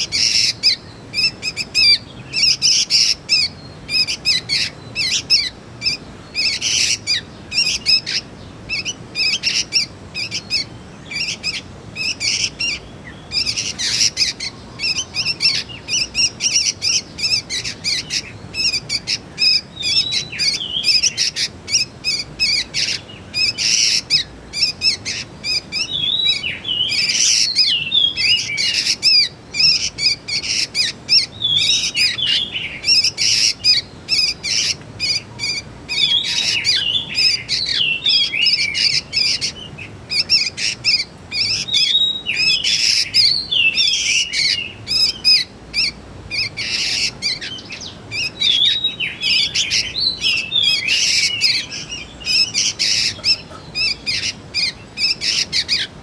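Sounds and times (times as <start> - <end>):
bird chirping and whistling: 0.0 - 55.9.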